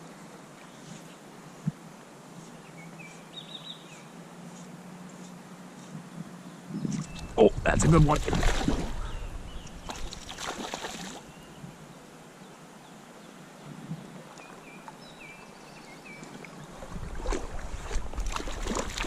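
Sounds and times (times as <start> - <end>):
creek running: 6.4 - 19.0
water splashing and sloshing: 6.9 - 11.3, 16.2 - 19.0.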